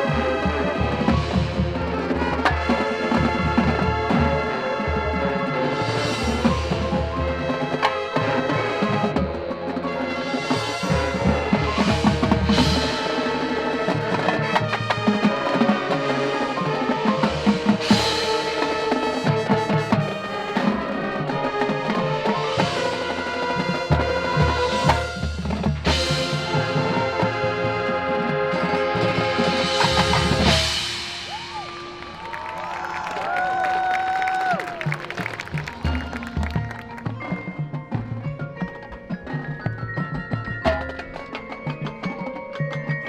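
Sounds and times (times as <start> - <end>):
wind and brass chords: 0.0 - 37.5
snare and bass drums: 9.8 - 20.8, 22.2 - 28.0, 28.7 - 37.4.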